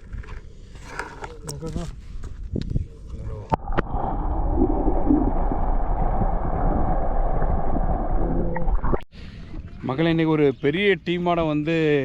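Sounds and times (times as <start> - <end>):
wind: 0.0 - 12.0.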